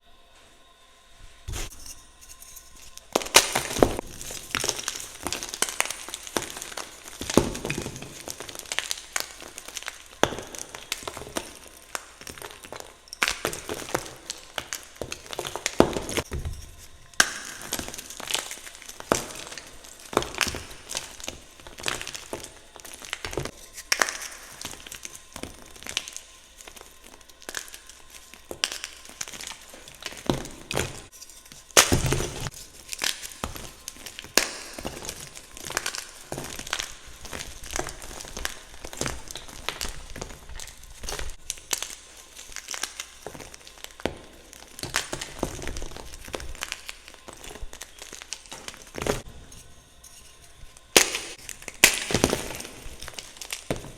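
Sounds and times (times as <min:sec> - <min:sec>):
chalk crunching and crumbling: 0:01.2 - 0:53.9.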